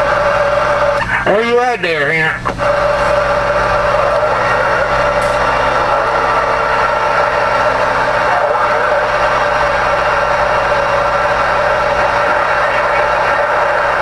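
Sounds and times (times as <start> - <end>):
radio static hiss: 0.0 - 14.0
low hum: 2.4 - 14.0.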